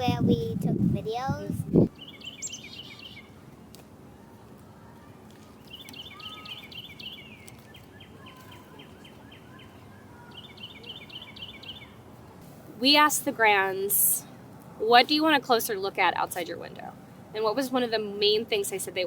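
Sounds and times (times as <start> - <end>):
outdoor background hiss: 0.0 - 19.0
small birds chirping: 1.7 - 14.4.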